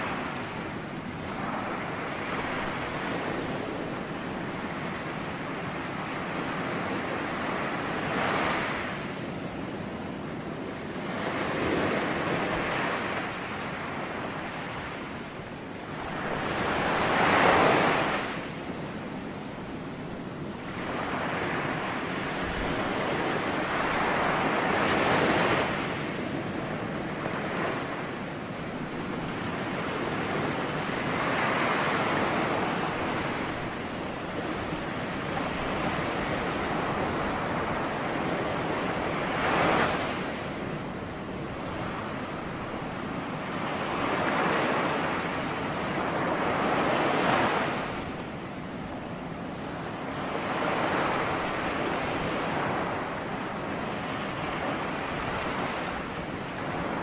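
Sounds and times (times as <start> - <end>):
ocean waves breaking: 10.9 - 18.6, 20.1 - 57.0.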